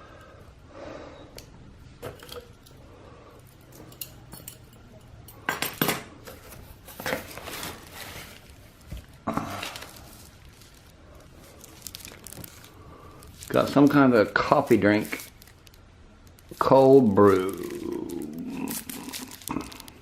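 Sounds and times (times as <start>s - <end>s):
items rustling in a box: 6.2s - 20.0s.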